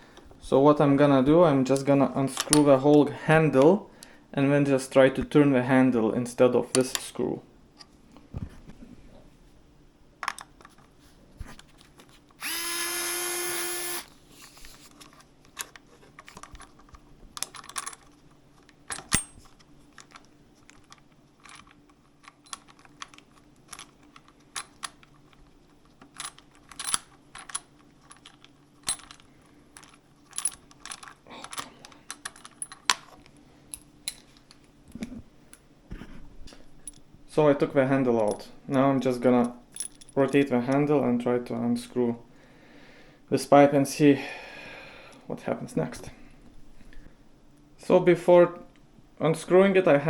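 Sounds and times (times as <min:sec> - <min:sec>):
power driver running: 0:12.4 - 0:14.1
small metal parts clinking: 0:26.1 - 0:34.4.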